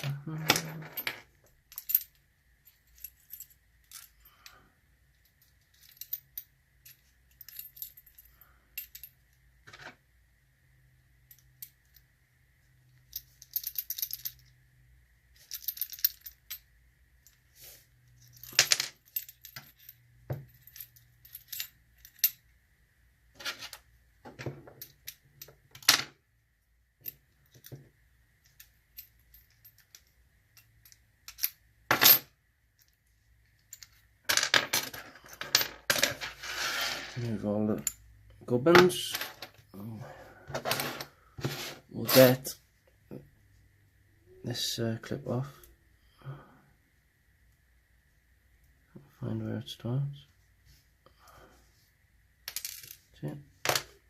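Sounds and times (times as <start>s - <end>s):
metal padlock parts clinking: 5.2s - 9.3s, 13.0s - 14.6s, 15.3s - 17.4s, 18.1s - 22.5s, 28.4s - 34.1s.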